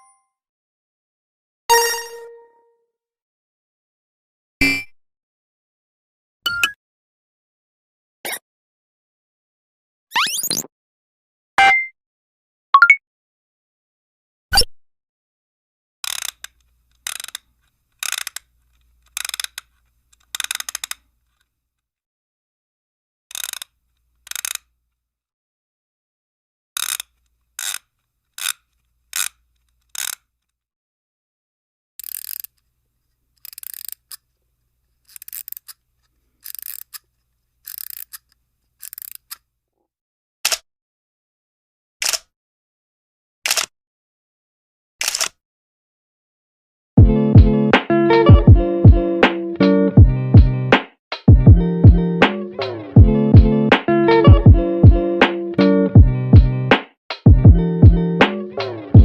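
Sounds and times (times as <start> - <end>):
click with brief tone: 12.8 - 13.0
small clicks: 16.0 - 21.5, 23.3 - 24.7, 26.8 - 30.5, 32.0 - 39.5, 42.0 - 42.3, 43.5 - 43.7, 45.0 - 45.4
sharp click: 24.3 - 24.7, 40.4 - 40.6, 42.0 - 42.3, 43.4 - 43.7, 45.0 - 45.4
rapid mechanical clicking: 32.0 - 32.6, 36.4 - 37.0.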